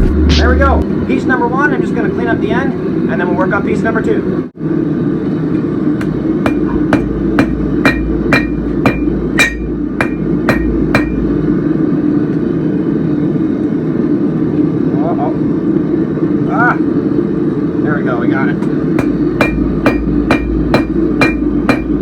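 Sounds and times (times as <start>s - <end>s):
forge roaring: 0.0s - 3.4s
hammer ringing on anvil: 6.4s - 11.3s, 19.0s - 22.0s.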